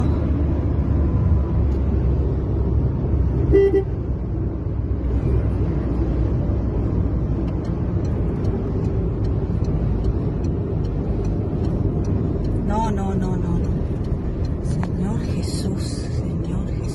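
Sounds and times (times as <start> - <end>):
car horn toot: 3.4 - 4.0.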